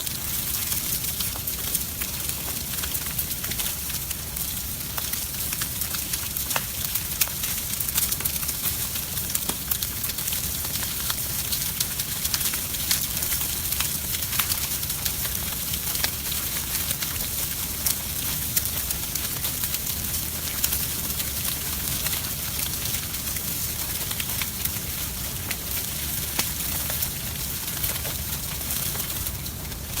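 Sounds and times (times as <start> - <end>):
chicken sizzling on grill: 0.0 - 30.0
crackles and pops: 0.0 - 30.0.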